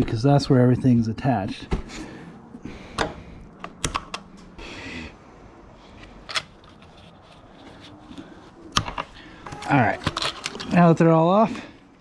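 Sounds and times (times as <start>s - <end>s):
rustle of handling: 5.9s - 8.6s.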